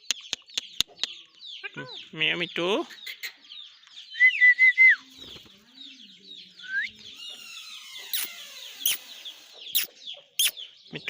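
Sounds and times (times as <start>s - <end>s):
birds chirping and twittering: 0.0s - 11.0s
rising chirp: 6.1s - 10.7s
sharp clicks: 7.5s - 10.6s.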